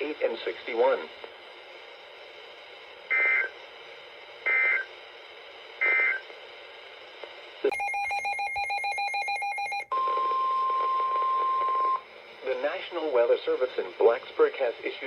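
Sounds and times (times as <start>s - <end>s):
steady hiss: 0.0s - 7.7s, 12.0s - 15.0s
shrill two-tone data bursts: 3.1s - 3.5s, 5.8s - 6.2s
buzzing pulsing multi-tone signal: 3.1s - 3.6s, 4.4s - 4.9s, 5.8s - 6.2s.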